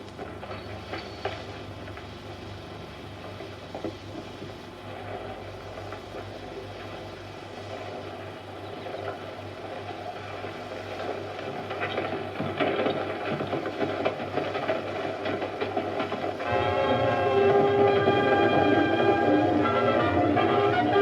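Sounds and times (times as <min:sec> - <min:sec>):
soundtrack hiss: 0:00.0 - 0:21.0
projector motor hum: 0:16.4 - 0:21.0.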